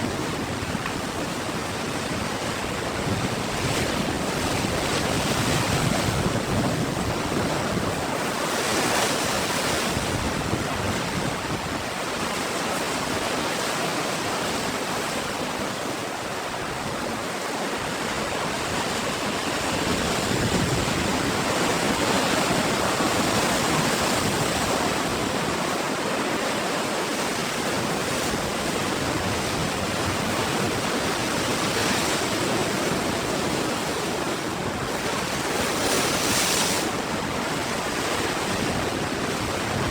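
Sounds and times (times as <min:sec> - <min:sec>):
ocean waves breaking: 0:00.0 - 0:39.9.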